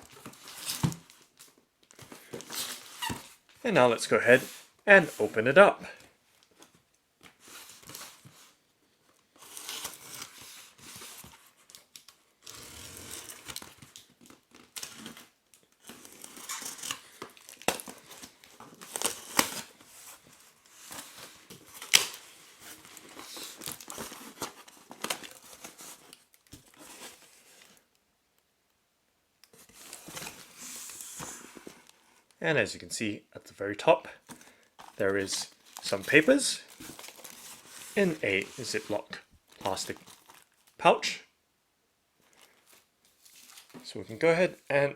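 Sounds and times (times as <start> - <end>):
packaging tearing and crinkling: 9.4 - 19.8, 21.7 - 27.2, 35.6 - 38.9, 39.5 - 40.7.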